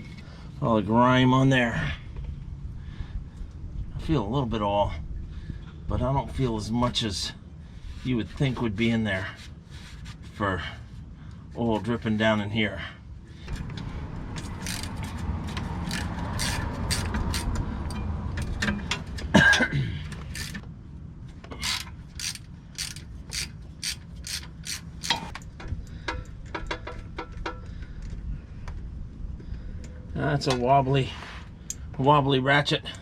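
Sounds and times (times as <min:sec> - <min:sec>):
hand ratchet clicking: 0:14.4 - 0:17.6, 0:20.2 - 0:20.6, 0:21.6 - 0:25.4.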